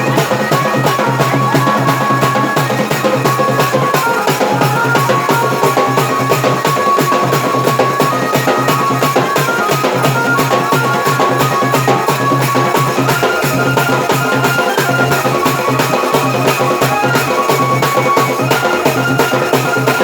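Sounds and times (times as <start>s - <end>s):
dance music: 0.0s - 6.3s
fast drum beat: 0.0s - 20.0s.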